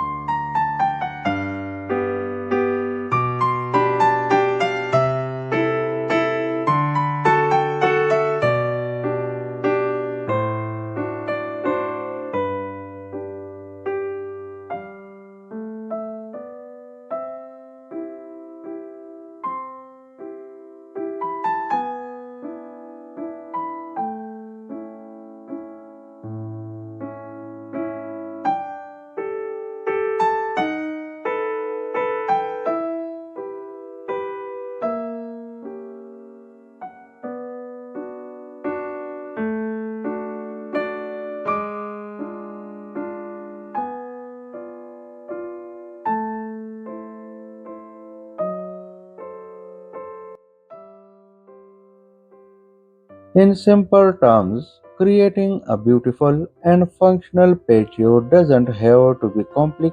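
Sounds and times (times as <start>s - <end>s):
gentle piano music: 0.0s - 59.9s.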